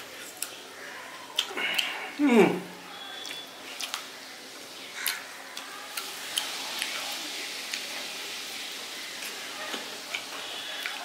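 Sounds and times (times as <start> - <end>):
person chewing food: 0.0 - 2.2, 3.0 - 4.1, 4.8 - 7.9, 9.1 - 11.0
wet mouth clicks and smacks: 3.2 - 4.1.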